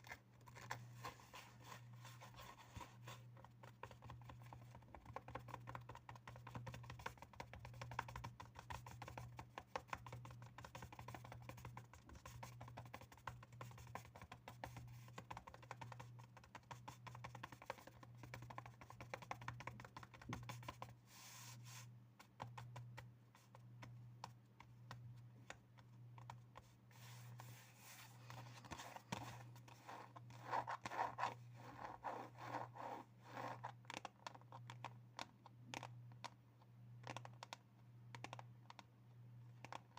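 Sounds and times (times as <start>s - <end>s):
light tapping and scratching: 0.0s - 38.9s.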